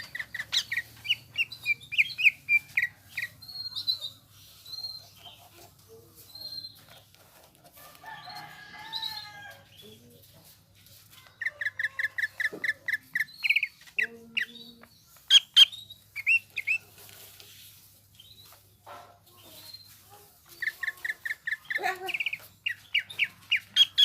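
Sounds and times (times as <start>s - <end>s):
bird singing: 0.0s - 5.7s, 11.4s - 16.9s, 19.4s - 24.0s.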